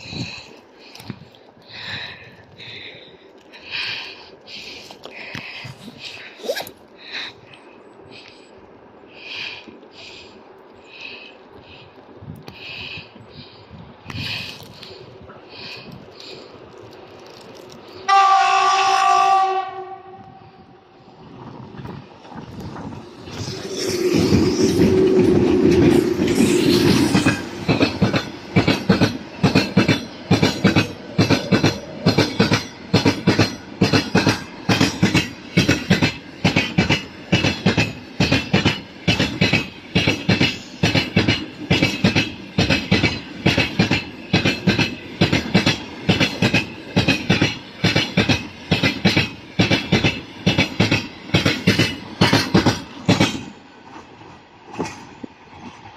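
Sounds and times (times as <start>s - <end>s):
train wheels clacking over rail joints: 21.8s - 55.9s.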